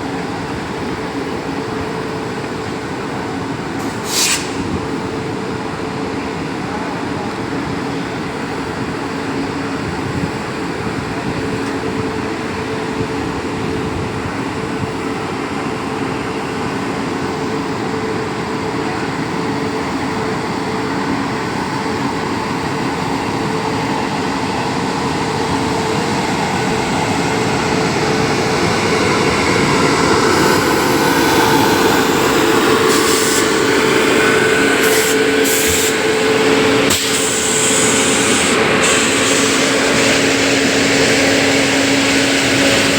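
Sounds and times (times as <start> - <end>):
train rumbling: 0.0 - 42.9
sharp train clacks: 27.0 - 42.9.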